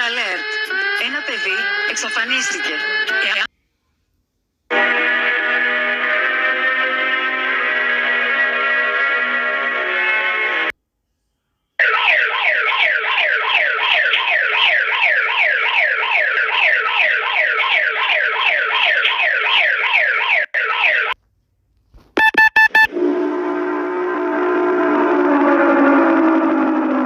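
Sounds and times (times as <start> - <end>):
short electronic beeps: 22.2 - 22.9.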